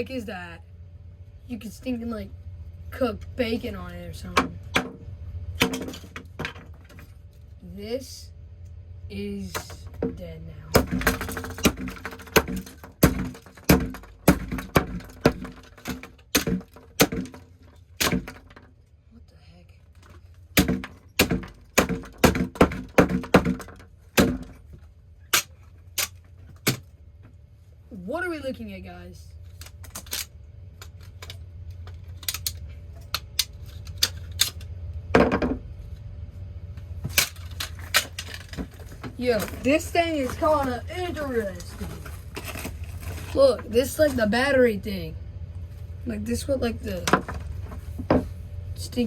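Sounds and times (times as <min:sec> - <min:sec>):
hammer smashing plastic: 0:05.6 - 0:07.0, 0:10.8 - 0:18.7, 0:20.0 - 0:26.9
plastic pieces clicking and clattering: 0:10.8 - 0:18.7, 0:29.5 - 0:34.6, 0:37.2 - 0:44.2.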